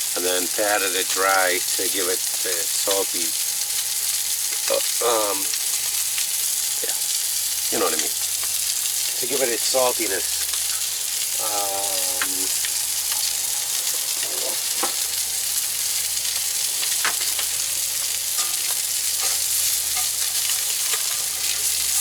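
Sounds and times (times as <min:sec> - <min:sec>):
fish sizzling in a hot pan: 0:00.0 - 0:22.0
fat ticking and popping: 0:10.5 - 0:13.3.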